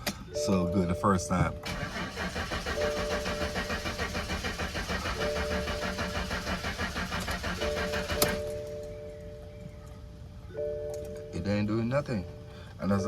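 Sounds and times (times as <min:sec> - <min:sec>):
engine cranking on starter: 0:01.6 - 0:08.9.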